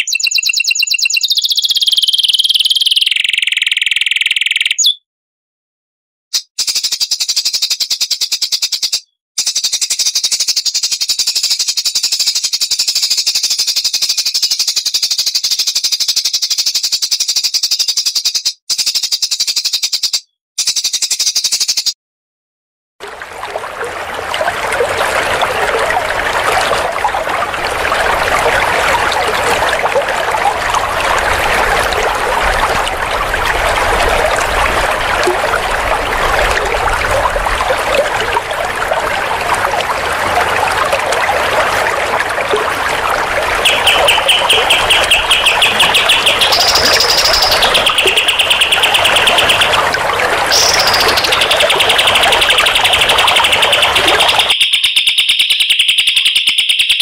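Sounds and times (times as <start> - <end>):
songbirds twittering: 0.0 - 5.0, 43.2 - 57.0
fast high bird trill: 43.6 - 49.9, 50.5 - 57.0.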